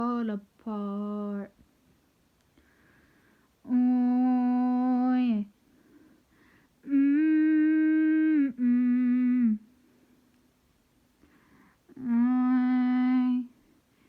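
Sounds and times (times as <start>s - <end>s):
person humming: 3.6s - 5.5s, 6.8s - 9.8s, 11.9s - 13.6s.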